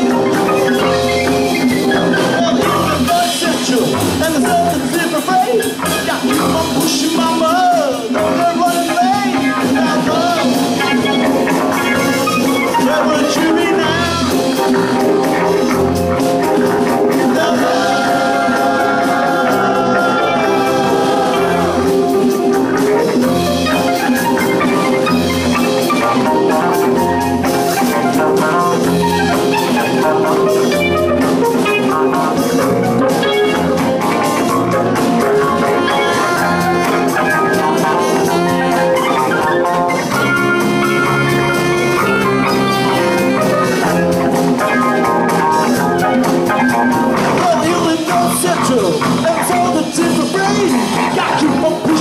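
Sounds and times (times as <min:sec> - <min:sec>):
band music: 0:00.0 - 0:52.0.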